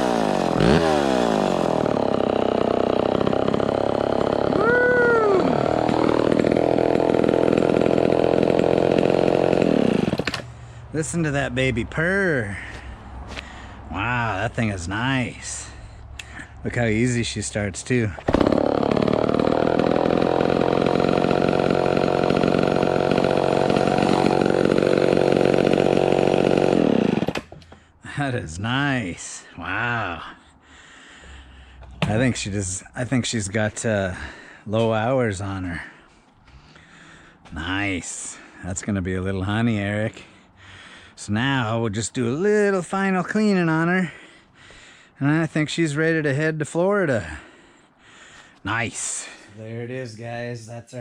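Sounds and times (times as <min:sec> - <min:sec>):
two-stroke chainsaw engine running: 0:00.0 - 0:10.5, 0:18.2 - 0:27.5.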